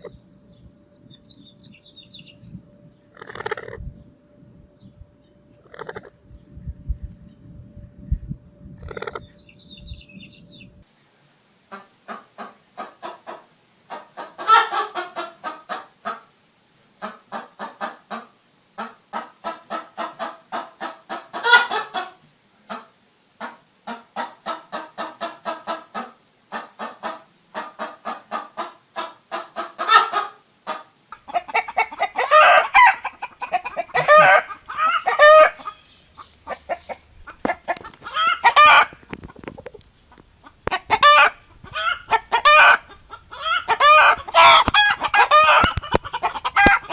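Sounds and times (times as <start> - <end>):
chickens squawking: 3.1 - 3.8, 5.6 - 6.2, 8.8 - 9.4, 11.7 - 16.3, 17.0 - 39.4, 40.1 - 46.9
hens clucking: 3.1 - 3.9, 5.6 - 6.2, 8.8 - 9.3, 11.7 - 16.3, 17.0 - 46.9.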